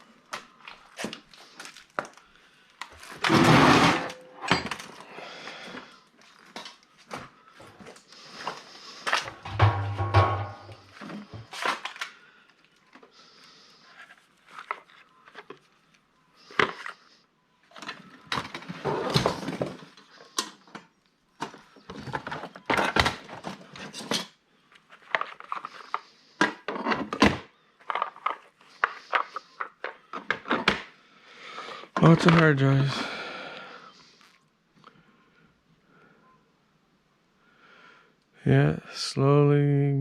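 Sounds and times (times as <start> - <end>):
scrap objects knocking and clattering: 3.2 - 4.9, 9.3 - 11.5.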